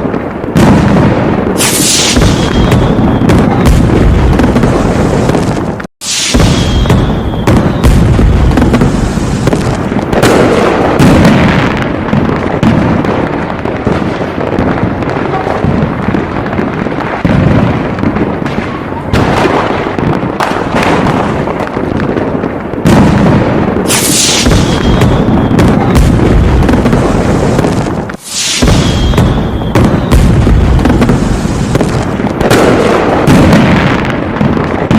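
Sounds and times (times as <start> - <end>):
fireworks booming and crackling: 0.0 - 34.9.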